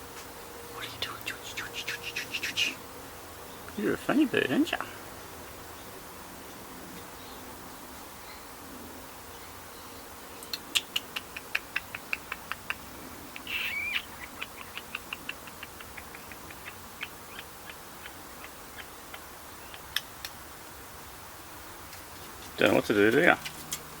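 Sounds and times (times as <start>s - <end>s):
parrot clicking: 10.4s - 13.5s, 14.3s - 20.4s
parrot squawk: 13.4s - 14.8s.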